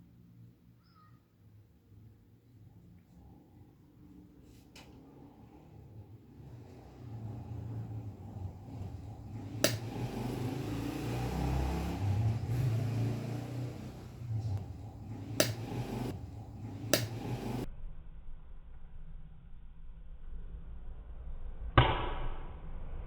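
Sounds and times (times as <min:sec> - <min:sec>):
fan motor humming: 0:04.1 - 0:17.7
sharp cracks: 0:09.6 - 0:10.3, 0:15.4 - 0:16.0, 0:16.9 - 0:17.2.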